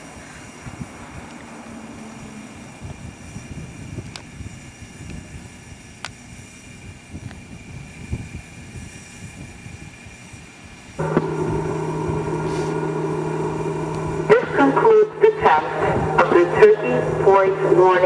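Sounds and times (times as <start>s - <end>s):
low rumbling background noise: 11.0s - 18.0s
steady electronic siren tone: 11.0s - 18.0s.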